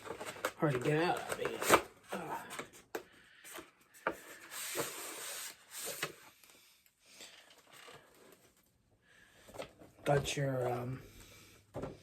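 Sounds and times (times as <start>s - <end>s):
packaging rubbing and scraping: 0.0s - 2.9s, 3.5s - 6.2s.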